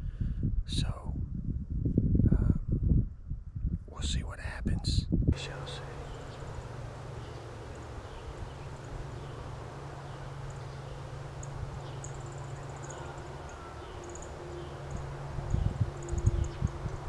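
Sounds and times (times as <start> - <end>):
wind: 0.0 - 17.0
low steady hum: 5.3 - 17.0
rain in woods: 5.4 - 17.0.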